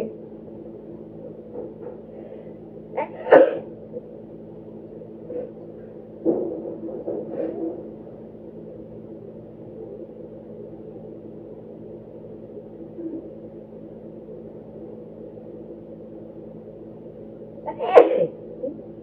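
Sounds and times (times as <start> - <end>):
steady low hum: 0.0 - 19.0
person sneezing: 3.0 - 3.7, 17.8 - 18.4.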